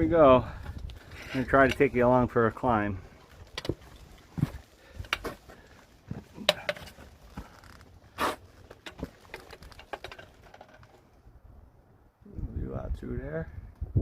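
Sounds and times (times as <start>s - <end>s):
hiker scuffing and knocking on rock: 3.5s - 9.4s.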